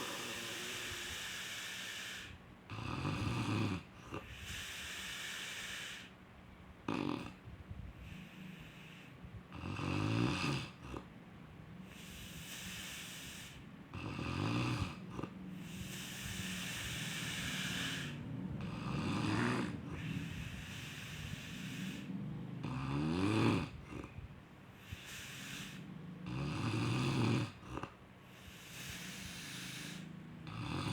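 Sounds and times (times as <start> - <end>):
long breathy hiss: 0.0 - 2.4, 4.1 - 6.2, 8.0 - 9.2, 11.8 - 13.8, 15.2 - 22.3, 24.7 - 30.9
rattling snores: 0.0 - 6.1, 6.8 - 7.4, 8.2 - 11.2, 11.8 - 30.9.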